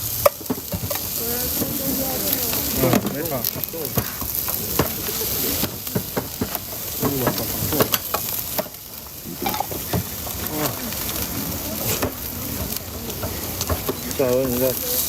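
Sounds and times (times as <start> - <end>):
food sizzling: 0.0 - 15.0.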